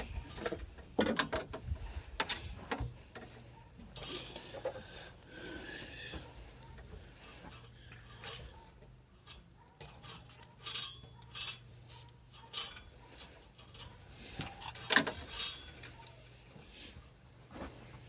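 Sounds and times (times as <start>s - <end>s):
small metal parts clicking: 9.2s - 16.2s.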